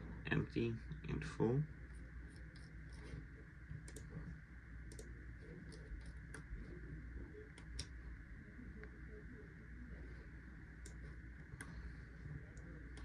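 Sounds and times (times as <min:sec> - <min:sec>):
low background hum: 0:00.0 - 0:13.0
computer mouse clicks: 0:03.8 - 0:04.2, 0:04.9 - 0:06.5, 0:07.5 - 0:08.0.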